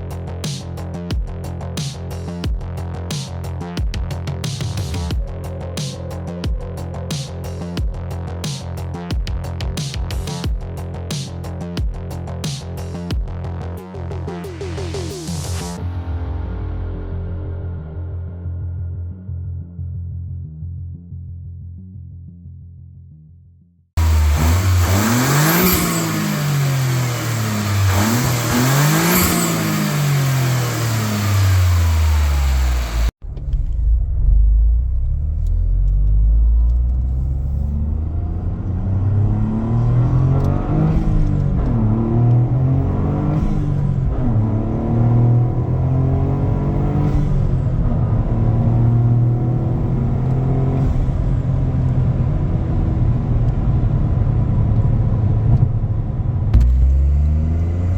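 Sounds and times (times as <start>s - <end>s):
car engine revving: 24.0s - 57.9s.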